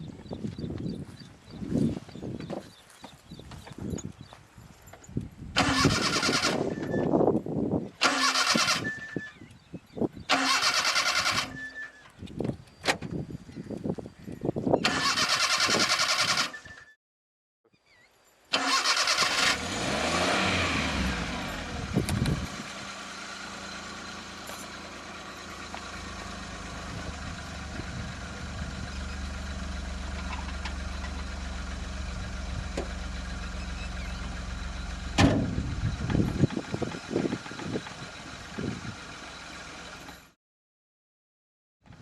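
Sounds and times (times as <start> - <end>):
car engine starting and idling: 5.6 - 7.0, 8.0 - 9.0, 10.2 - 11.7, 14.8 - 16.6, 18.5 - 40.3.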